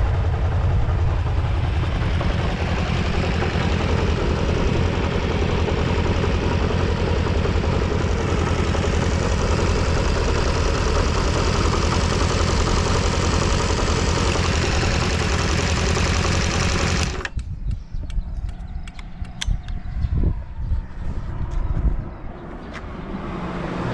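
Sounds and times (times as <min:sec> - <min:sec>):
motorcycle engine idling: 0:00.0 - 0:17.4.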